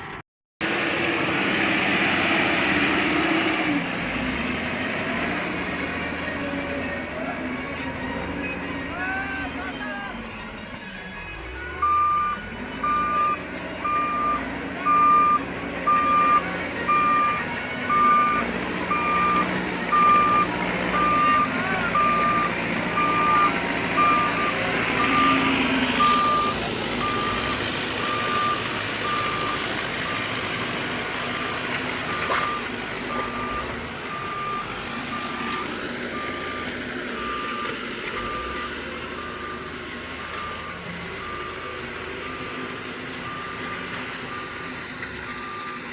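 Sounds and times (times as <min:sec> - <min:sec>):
diesel engine: 0:00.0 - 0:45.9
reversing alarm beeping: 0:07.7 - 0:45.9.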